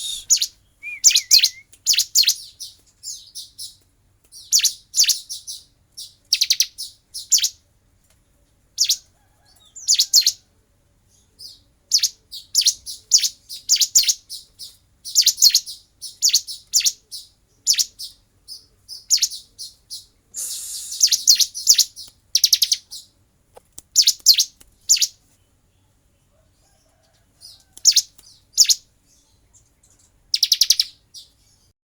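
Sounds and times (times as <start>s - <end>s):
bird chattering calls: 0.0s - 1.6s, 20.4s - 22.8s.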